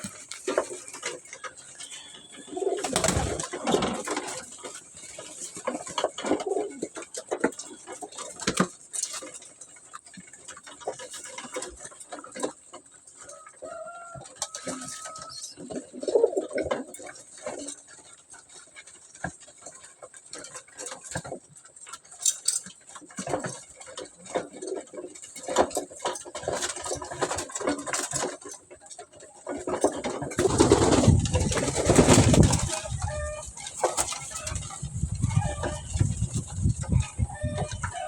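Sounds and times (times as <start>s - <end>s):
pigeons cooing: 0.0s - 8.6s, 13.1s - 18.2s, 24.0s - 28.4s, 29.4s - 38.0s.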